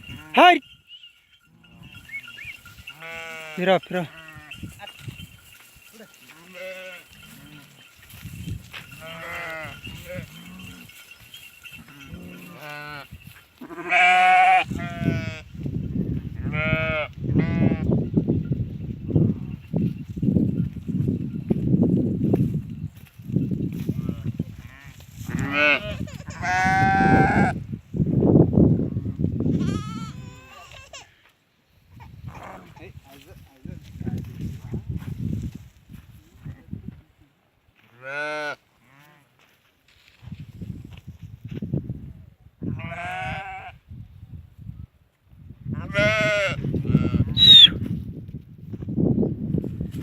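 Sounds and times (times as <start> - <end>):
goats bleating: 1.6 - 5.0, 6.1 - 7.9, 8.9 - 10.9, 11.8 - 15.4, 24.6 - 27.5, 42.8 - 43.8, 45.8 - 47.7.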